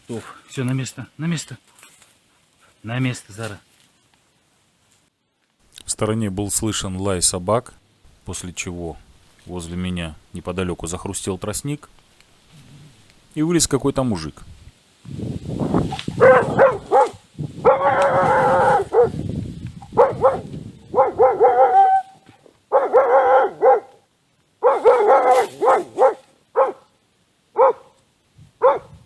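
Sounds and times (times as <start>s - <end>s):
dog barking: 16.2s - 19.2s, 19.9s - 24.0s, 24.6s - 26.9s, 27.6s - 28.0s, 28.6s - 29.0s.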